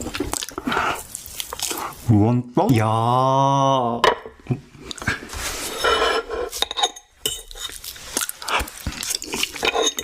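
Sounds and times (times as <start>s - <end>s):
utensils clinking against dishes: 5.8s - 7.8s, 9.3s - 10.0s.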